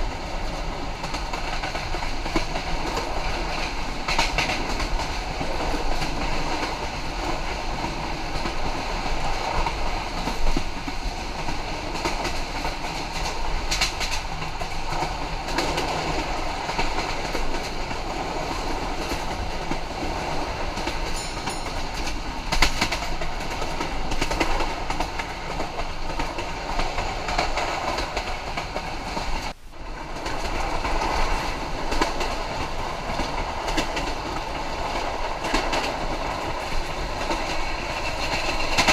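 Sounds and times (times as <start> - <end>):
train wheels clacking on rails: 0.0 - 38.9.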